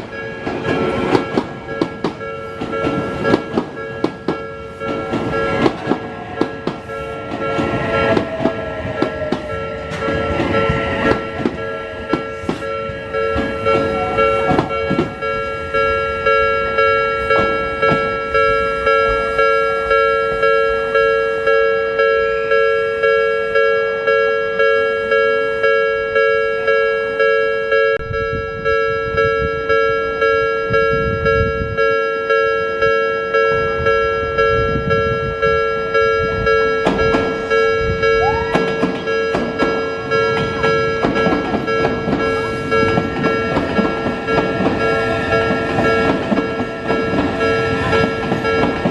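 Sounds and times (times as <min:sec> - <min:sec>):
train wheels clicking over rail joints: 0:00.0 - 0:19.9, 0:35.9 - 0:48.9
level-crossing warning bell: 0:00.0 - 0:48.9.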